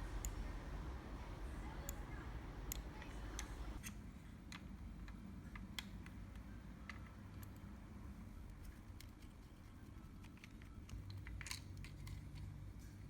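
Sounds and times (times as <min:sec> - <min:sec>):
low background rumble: 0:00.0 - 0:03.8
plastic parts clicking: 0:08.5 - 0:12.5.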